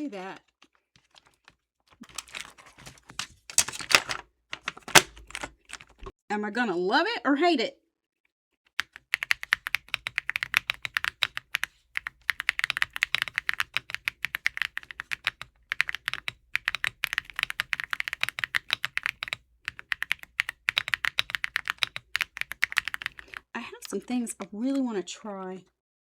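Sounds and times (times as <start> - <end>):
mechanical keyboard typing: 2.0 - 6.1, 8.8 - 23.5.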